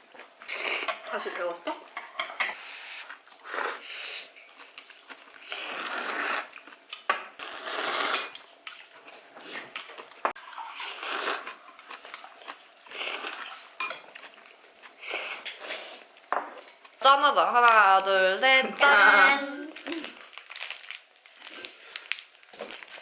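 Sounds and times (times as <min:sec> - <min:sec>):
dishes and cutlery clinking: 0:01.6 - 0:02.6, 0:13.8 - 0:14.2.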